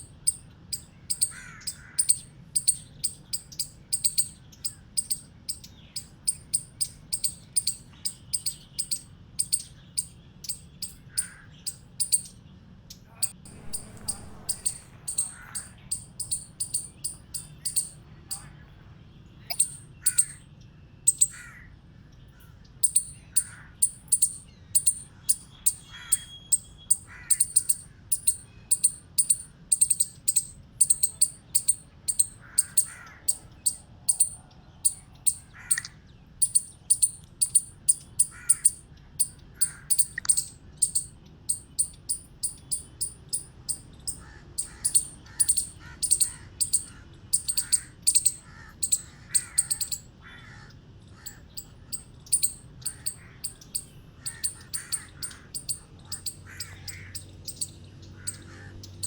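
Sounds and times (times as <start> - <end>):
chipmunk chip alarm call: 0.0 - 12.4, 13.0 - 18.6, 19.4 - 20.4, 21.0 - 21.7, 22.4 - 59.0
faint low chirps: 11.7 - 21.4.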